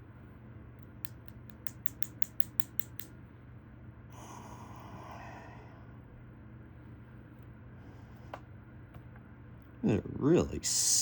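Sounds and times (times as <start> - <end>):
small sharp clicks of lock tool: 0.8 - 3.1.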